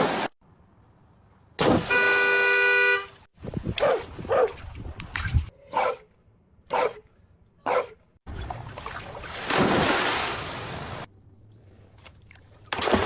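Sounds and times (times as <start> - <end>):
dog barking: 3.8 - 4.6, 5.7 - 6.1, 6.7 - 7.0, 7.6 - 8.0.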